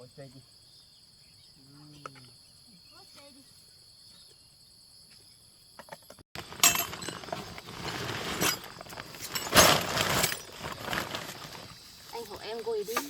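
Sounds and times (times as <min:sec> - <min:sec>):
insects chirping: 0:00.0 - 0:13.0
hard objects clattering: 0:05.9 - 0:11.8.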